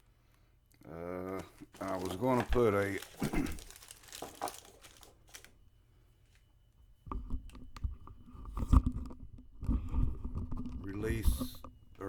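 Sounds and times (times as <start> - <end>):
plastic parts clicking and knocking: 1.4 - 5.5.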